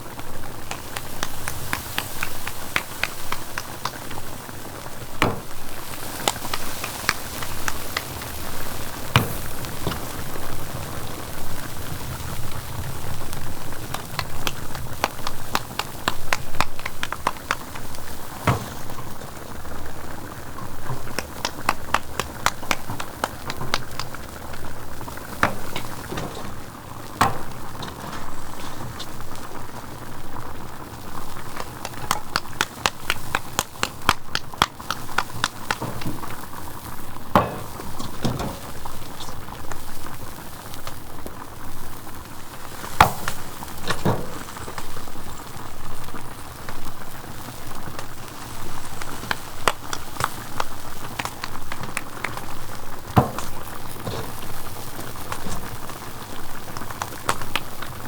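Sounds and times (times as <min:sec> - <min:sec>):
food bubbling and sizzling in pot: 0:00.0 - 0:58.0
sharp crackles and clicks: 0:00.0 - 0:58.0
loud knocks: 0:00.7 - 0:11.6, 0:13.6 - 0:39.6, 0:42.8 - 0:45.3, 0:51.1 - 0:57.7.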